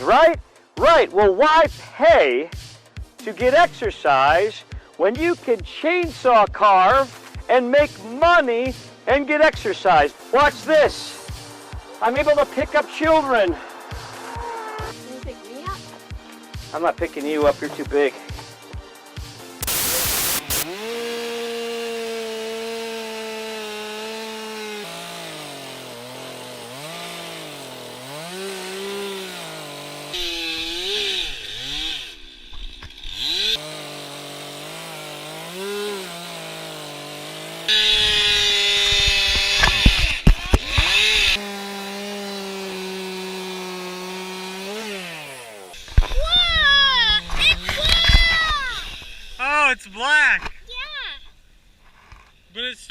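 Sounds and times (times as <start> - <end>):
chainsaw cutting wood: 10.0 - 49.5.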